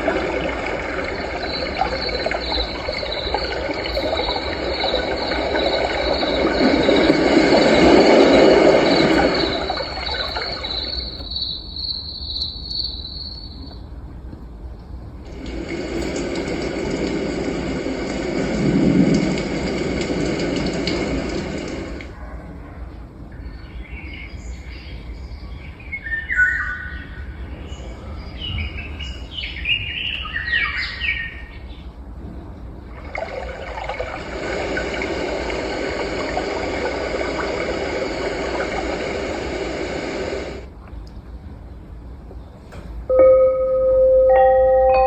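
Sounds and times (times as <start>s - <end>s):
steady rushing noise: 0.0s - 11.5s, 15.0s - 22.1s, 33.0s - 40.8s
birds chirping: 0.0s - 14.7s
bell ringing: 43.1s - 45.0s.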